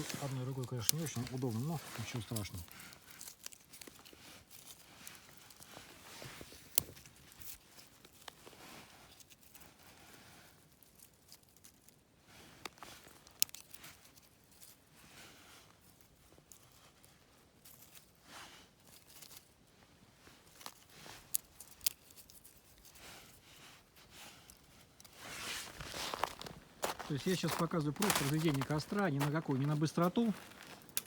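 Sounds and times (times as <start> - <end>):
twigs snapping: 0.0 - 5.6, 12.6 - 13.8, 25.0 - 31.0
dry twigs rustling and crackling: 0.0 - 15.0, 15.8 - 19.6, 20.2 - 31.0.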